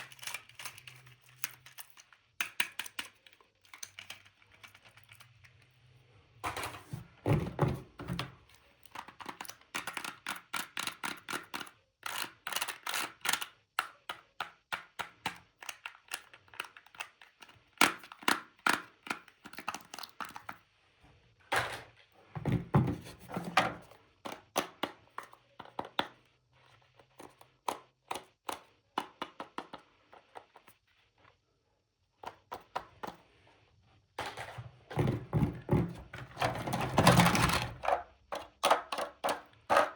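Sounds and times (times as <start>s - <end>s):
plastic toys clicking and tapping: 0.0s - 5.7s, 7.9s - 20.6s, 23.2s - 26.3s, 27.0s - 30.8s, 35.4s - 39.9s.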